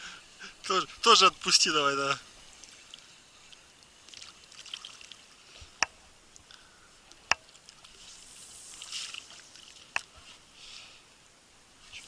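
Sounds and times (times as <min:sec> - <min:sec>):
soft water splash: 0:02.6 - 0:05.9, 0:07.2 - 0:10.3.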